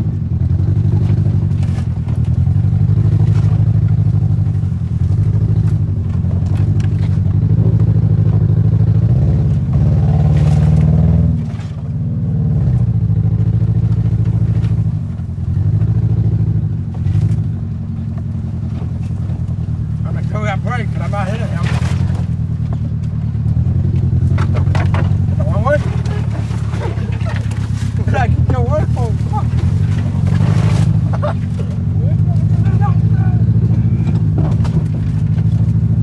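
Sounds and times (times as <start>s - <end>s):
car engine labouring: 0.0s - 36.0s
car knocking and clattering: 0.0s - 36.0s.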